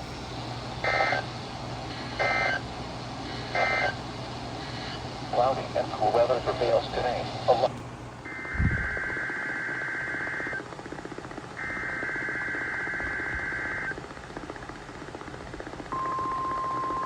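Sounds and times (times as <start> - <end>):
steady warning alarm tone: 0.0 - 7.6, 8.2 - 10.6, 11.6 - 14.0, 15.9 - 17.0.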